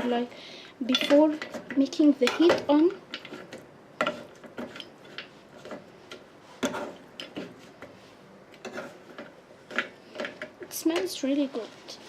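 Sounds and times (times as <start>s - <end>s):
spoon scraping and knocking pot: 0.9s - 5.8s, 6.6s - 7.6s, 8.6s - 11.2s.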